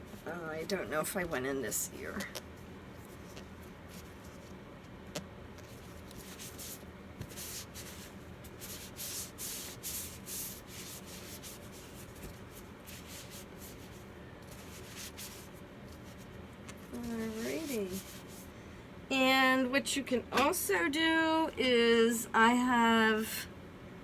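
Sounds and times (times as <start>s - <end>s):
cloth wiping vinyl doll head: 5.6s - 18.5s.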